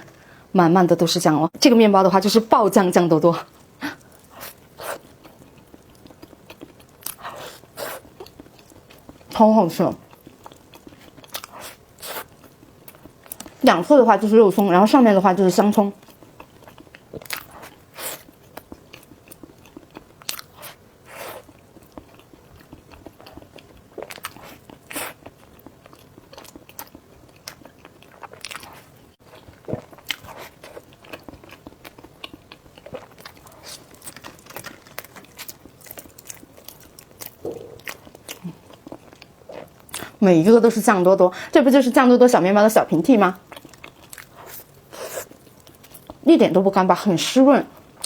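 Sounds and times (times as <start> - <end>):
biting and chewing bread: 16.1 - 40.1
mouth clicks: 37.4 - 38.0.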